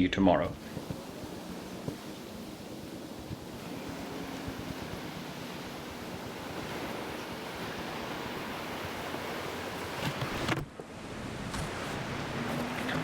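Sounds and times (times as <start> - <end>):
ocean surf: 0.4 - 13.0
wind on microphone: 0.5 - 13.0.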